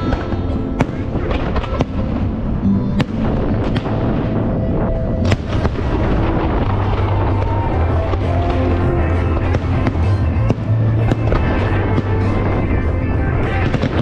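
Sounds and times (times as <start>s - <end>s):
fireworks bangs: 0.0s - 14.0s
fireworks crackling: 0.0s - 14.0s
music from loudspeakers: 5.0s - 14.0s.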